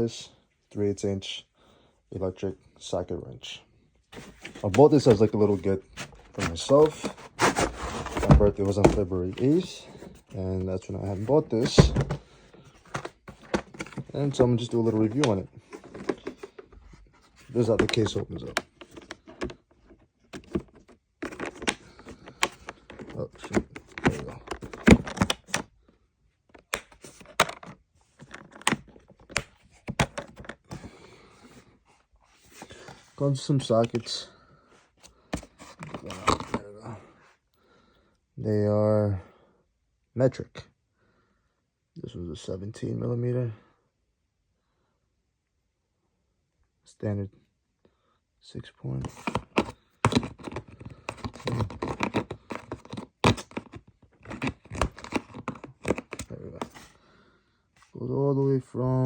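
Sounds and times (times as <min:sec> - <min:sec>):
sockets and tool case clacking: 0:04.2 - 0:10.4, 0:11.1 - 0:16.7, 0:17.4 - 0:19.6, 0:20.3 - 0:25.6, 0:26.6 - 0:30.9, 0:49.1 - 0:56.9.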